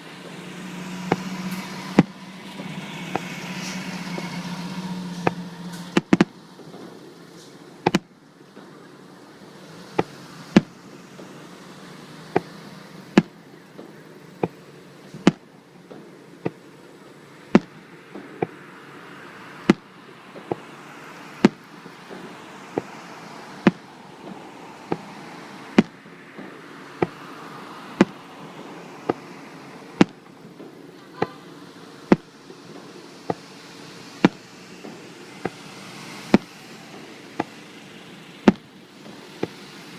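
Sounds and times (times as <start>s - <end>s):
fireworks bursting: 0.0s - 39.9s.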